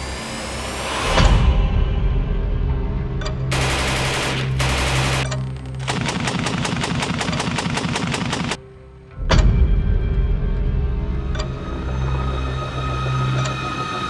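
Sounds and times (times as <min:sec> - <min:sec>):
machine gun firing bursts: 0:03.5 - 0:08.6.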